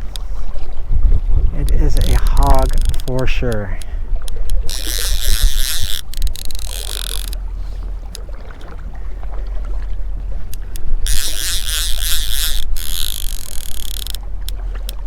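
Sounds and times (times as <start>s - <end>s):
low wind rumble: 0.0s - 15.0s.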